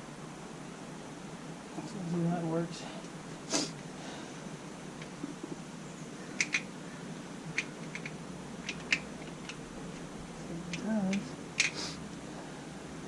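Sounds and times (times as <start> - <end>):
light sharp clicks and taps: 6.4 - 6.7, 7.5 - 10.1, 10.7 - 11.9.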